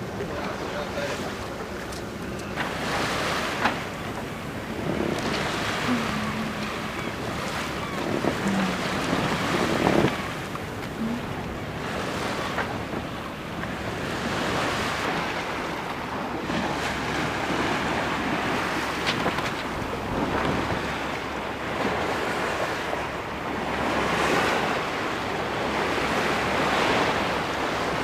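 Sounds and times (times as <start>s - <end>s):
sea waves rushing: 0.0s - 28.0s
wind buffeting microphone: 2.7s - 28.0s.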